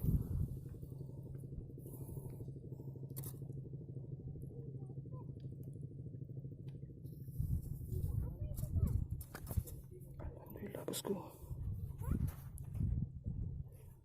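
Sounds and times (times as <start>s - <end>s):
low pulsing hum: 0.0s - 14.0s.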